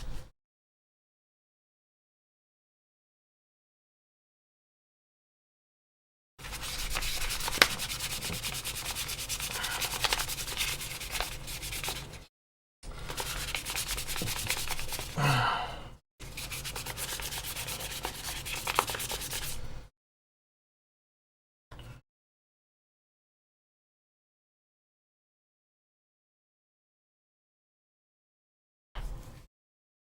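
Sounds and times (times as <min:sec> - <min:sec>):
sandpaper rubbing on plastic: 0:06.4 - 0:12.2, 0:13.1 - 0:15.2, 0:16.2 - 0:19.7.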